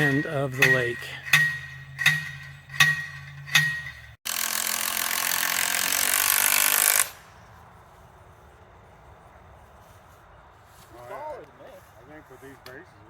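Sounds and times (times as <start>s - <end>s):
ringing metal strike: 0.0s - 4.2s.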